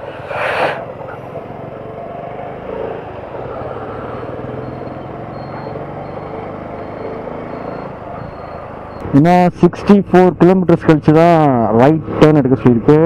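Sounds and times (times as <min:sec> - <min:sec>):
road traffic: 0:00.0 - 0:13.0.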